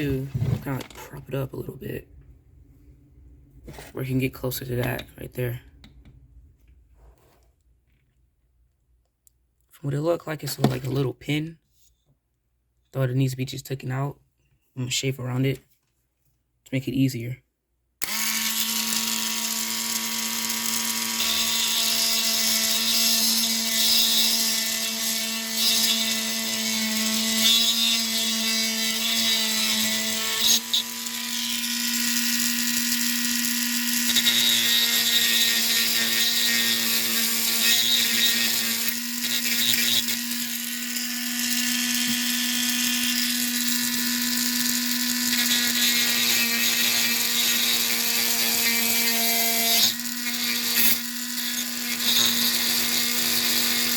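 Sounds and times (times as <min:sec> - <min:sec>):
rotary tool grinding: 0:18.0 - 0:53.9.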